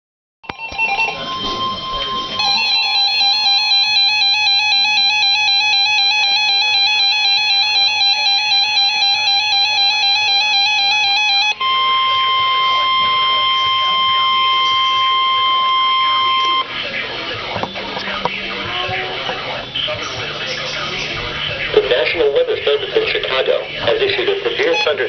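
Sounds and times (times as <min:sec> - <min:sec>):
harsh electronic alarm tone: 0:00.5 - 0:16.7, 0:24.6 - 0:25.0
mixed electronic tones: 0:00.5 - 0:25.0.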